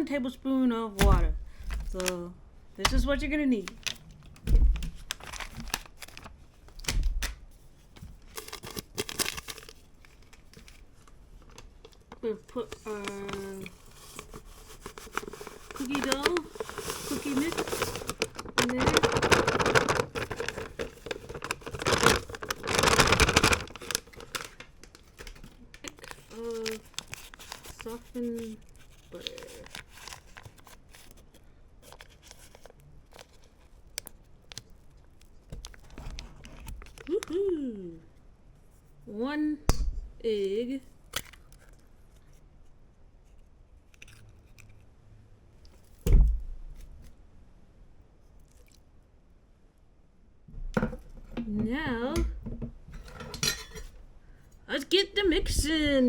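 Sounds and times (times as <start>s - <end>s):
packet crinkling: 1.0s - 7.4s, 8.1s - 37.4s
dry mix pouring into bowl: 14.4s - 24.6s.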